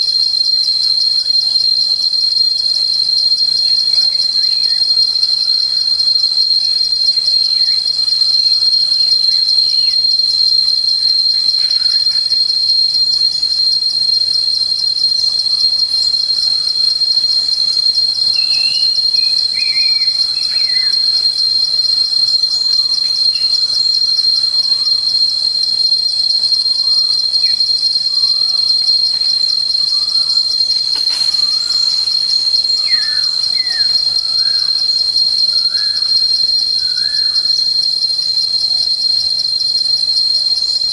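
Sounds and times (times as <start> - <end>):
high-pitched insect trill: 0.0 - 40.9
faint bird chirps: 18.4 - 21.0, 29.8 - 34.7.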